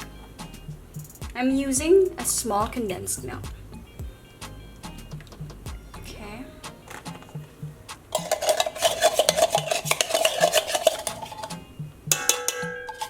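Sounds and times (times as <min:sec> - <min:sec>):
spoon scraping container: 0:06.9 - 0:13.0.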